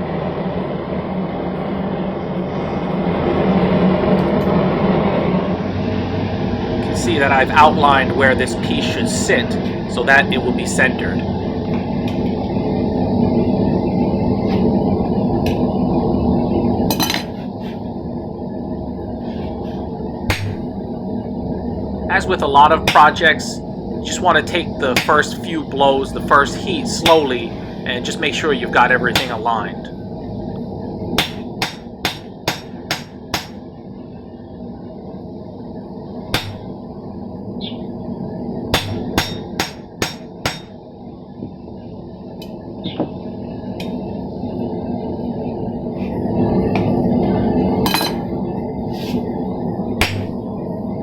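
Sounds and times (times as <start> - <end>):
gas burner rushing: 0.0 - 33.6, 38.2 - 40.8
hammer striking steel plate: 20.3 - 20.6, 22.8 - 23.3, 25.0 - 25.4, 27.0 - 27.4, 29.1 - 29.6, 31.2 - 33.6, 36.4 - 36.7, 38.8 - 40.8, 50.0 - 50.4.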